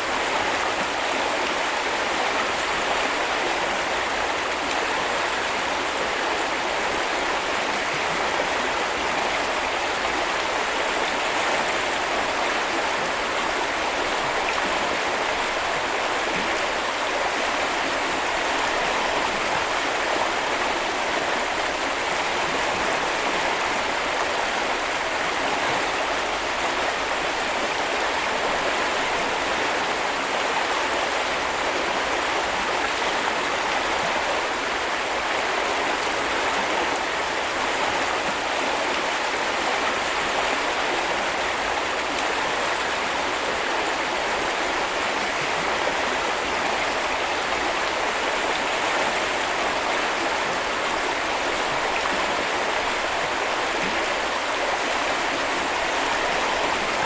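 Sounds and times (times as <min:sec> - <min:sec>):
stream flowing: 0:00.0 - 0:57.0.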